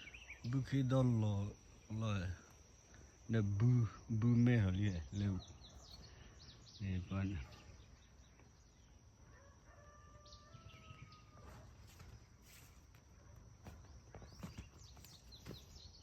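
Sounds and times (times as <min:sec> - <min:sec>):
small birds chirping: 0:00.0 - 0:16.0
distant rooster crowing: 0:09.2 - 0:11.8.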